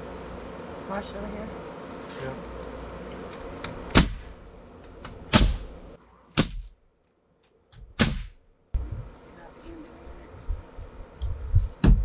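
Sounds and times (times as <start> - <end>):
sharp bangs with ringing decay: 3.9 - 4.4, 5.3 - 5.7, 6.4 - 6.8, 8.0 - 8.4.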